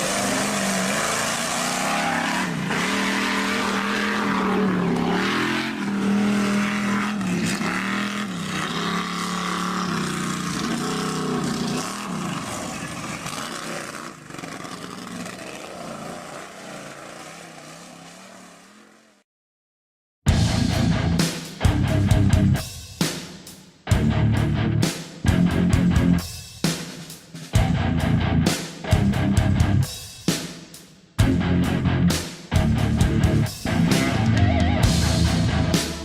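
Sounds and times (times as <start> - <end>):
monster truck engine revving: 0.0 - 19.2, 31.2 - 36.0
loud rock music with guitar: 20.3 - 22.8, 23.9 - 26.4, 27.5 - 30.2, 31.2 - 36.0.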